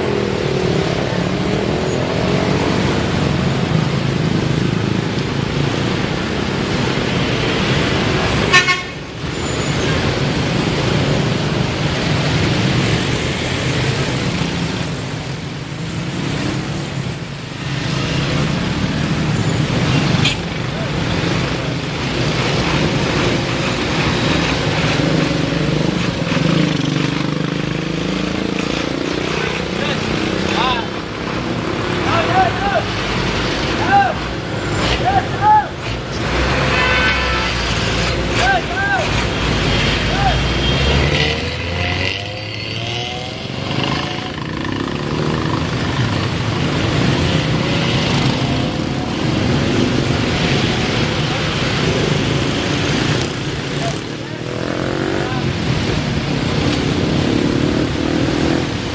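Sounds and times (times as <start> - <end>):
vehicles driving through water: 0.0 - 58.9.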